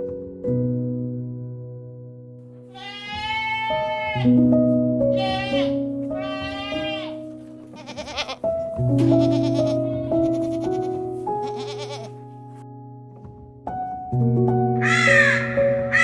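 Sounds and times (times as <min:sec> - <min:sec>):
goat bleating: 0:02.7 - 0:04.4, 0:05.1 - 0:12.2
plucked guitar music: 0:03.7 - 0:14.2.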